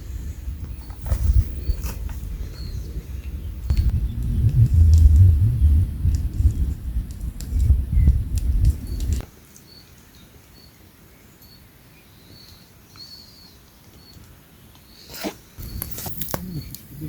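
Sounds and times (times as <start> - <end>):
loud low rumble: 0.0 - 9.2.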